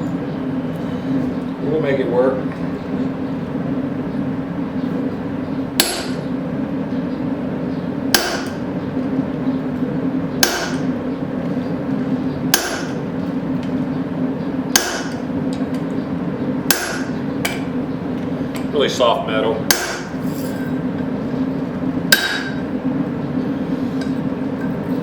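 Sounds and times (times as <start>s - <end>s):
forge hum: 0.0s - 25.0s
hammer striking horseshoe on anvil: 5.8s - 6.2s, 8.1s - 8.7s, 10.4s - 11.0s, 12.5s - 13.0s, 14.7s - 15.3s, 16.7s - 17.7s, 19.7s - 20.6s, 22.1s - 22.6s.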